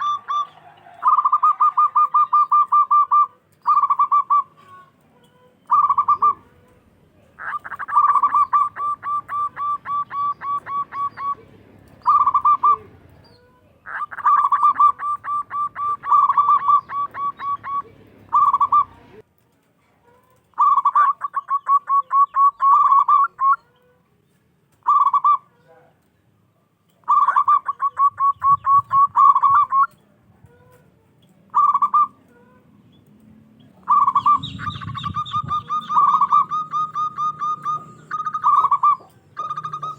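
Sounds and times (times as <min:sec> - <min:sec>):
dove cooing: 0:00.0 - 0:19.2, 0:20.3 - 0:24.0, 0:24.8 - 0:25.9, 0:27.0 - 0:30.9, 0:31.5 - 0:32.7, 0:33.6 - 0:39.9.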